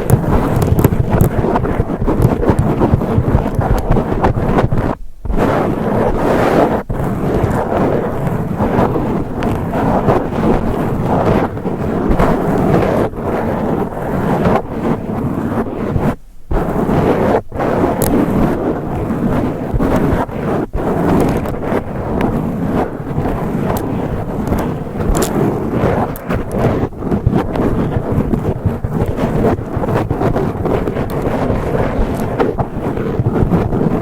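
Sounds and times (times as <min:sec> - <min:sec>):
fingernails scratching microphone: 0:00.0 - 0:34.0.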